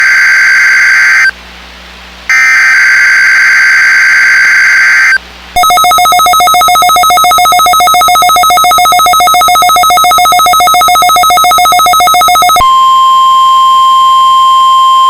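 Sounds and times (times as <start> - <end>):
pulsing two-pitch alert tone: 5.6 - 12.9.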